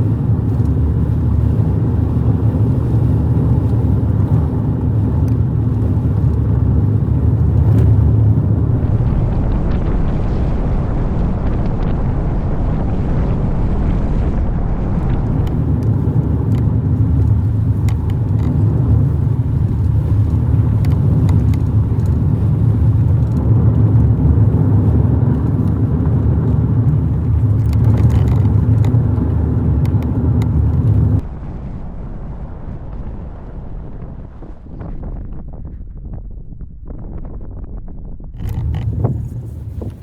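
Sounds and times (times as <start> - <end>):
road and engine rumble: 0.0 - 40.0
faint clicks: 15.0 - 22.2, 26.4 - 31.2.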